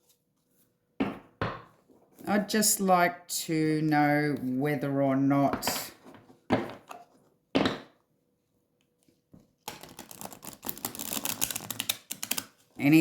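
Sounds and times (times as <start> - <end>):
cards being shuffled by hand: 9.0 - 12.8.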